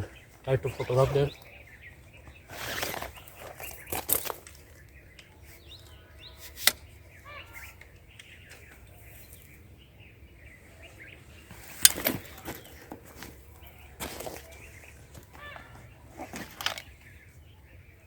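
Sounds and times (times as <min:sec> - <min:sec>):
faint bird chirps: 0:00.0 - 0:18.0
rustling and handling noise: 0:00.8 - 0:07.0, 0:11.4 - 0:17.2.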